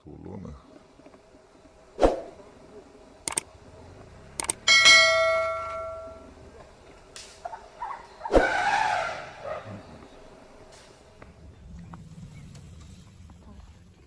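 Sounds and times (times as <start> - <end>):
loud metallic clang ringing: 4.7 - 6.3.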